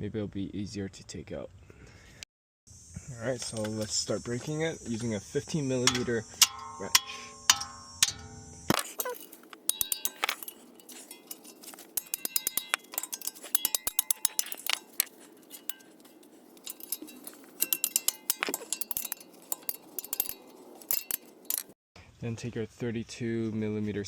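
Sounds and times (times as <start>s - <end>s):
wrench ratcheting: 8.7s - 21.7s.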